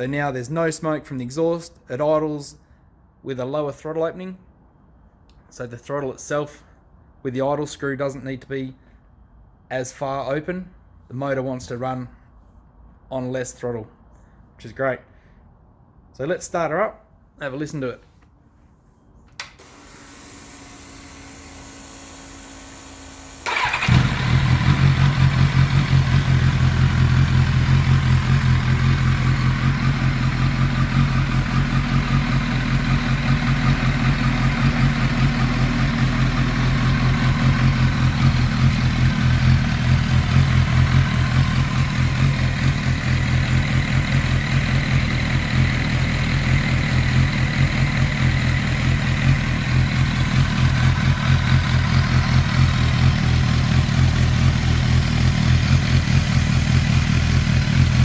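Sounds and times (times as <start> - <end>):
motorcycle engine starting and idling: 19.3 - 58.0.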